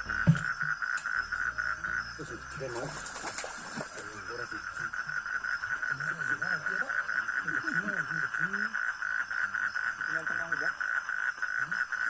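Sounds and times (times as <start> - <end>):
pulsing trill of frogs or insects: 0.0 - 12.0
faint talking: 5.8 - 10.8.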